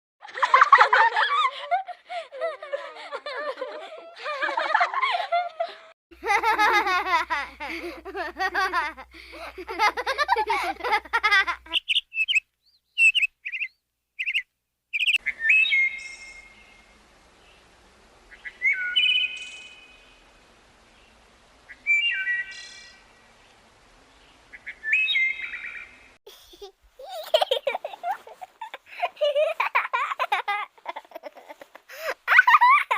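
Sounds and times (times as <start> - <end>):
children giggling: 0.2 - 11.9, 26.3 - 32.9
high whistly chirp: 11.7 - 14.4, 15.0 - 16.8, 18.4 - 20.0, 21.8 - 23.0, 24.8 - 25.8.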